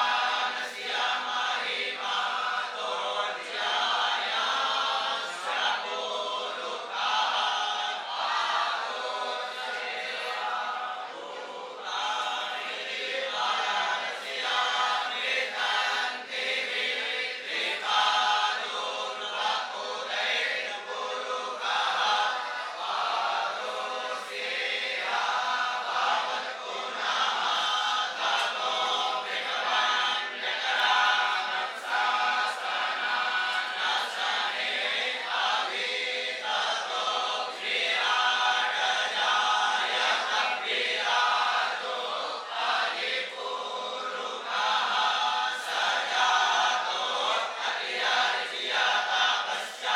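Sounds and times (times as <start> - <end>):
boys chanting in unison: 0.0 - 49.9.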